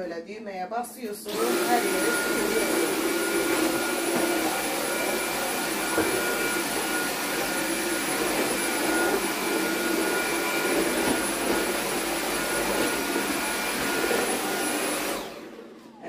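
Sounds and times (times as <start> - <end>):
cordless vacuum whirring: 1.2 - 16.0.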